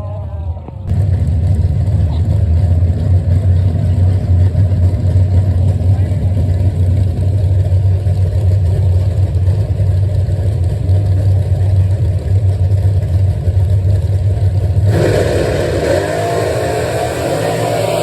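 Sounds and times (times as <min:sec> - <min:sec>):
car engine running: 0:00.7 - 0:18.0.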